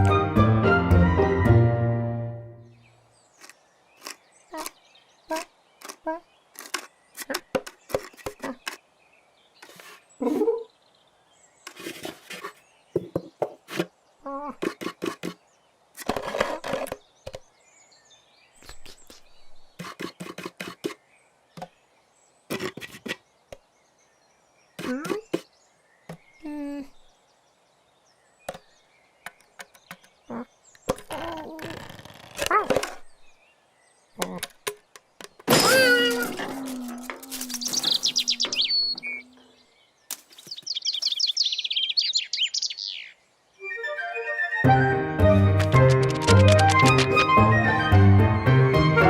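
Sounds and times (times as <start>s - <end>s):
squeaky chirp-like noises: 3.4s - 8.8s, 9.6s - 10.7s, 30.3s - 33.1s, 35.5s - 39.6s.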